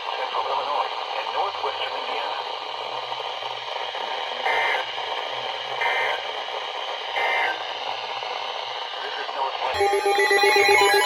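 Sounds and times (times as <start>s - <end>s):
digital data bursts: 9.8s - 11.0s.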